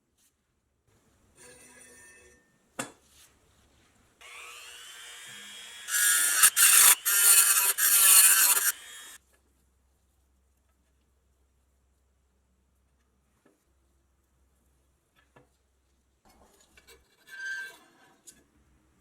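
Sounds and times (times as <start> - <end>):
power tool cutting metal: 4.2 - 9.2.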